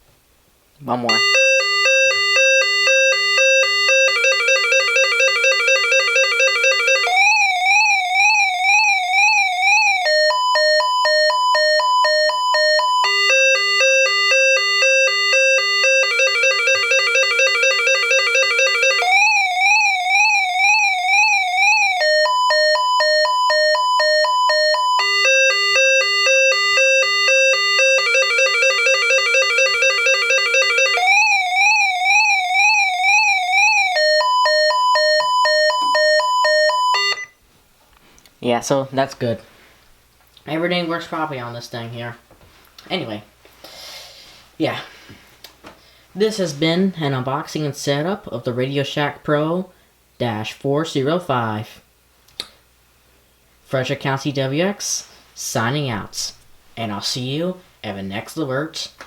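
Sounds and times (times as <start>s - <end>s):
pulsing two-note alarm beep: 1.1s - 31.8s, 33.8s - 37.3s
fast warbling alarm wail: 1.1s - 37.3s.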